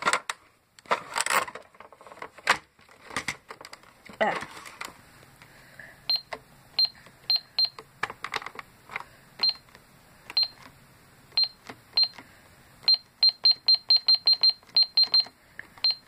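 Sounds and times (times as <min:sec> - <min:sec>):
toy cash register beeps: 0:06.1 - 0:07.8, 0:09.4 - 0:09.6, 0:10.3 - 0:10.6, 0:11.4 - 0:12.2, 0:12.8 - 0:16.0.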